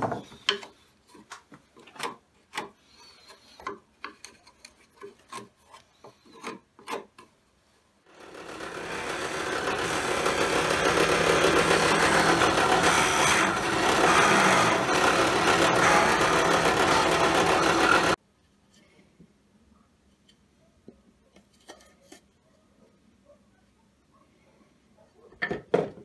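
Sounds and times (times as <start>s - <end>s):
tool rasping wood: 8.2s - 18.2s.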